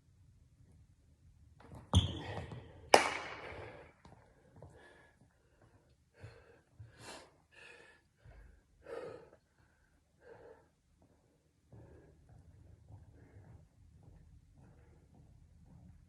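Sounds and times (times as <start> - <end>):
heavy breathing: 4.6 - 13.9.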